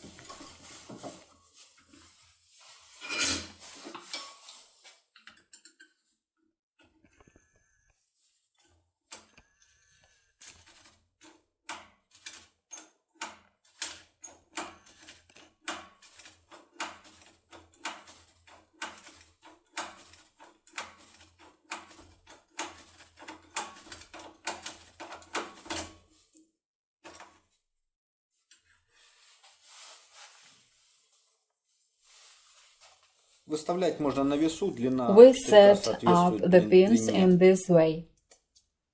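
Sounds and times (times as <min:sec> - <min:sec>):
soft rustle: 0:29.0 - 0:33.5.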